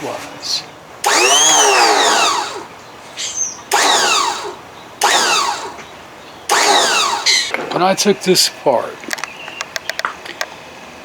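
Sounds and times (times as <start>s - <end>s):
electric starter motor whirring: 1.0s - 7.5s.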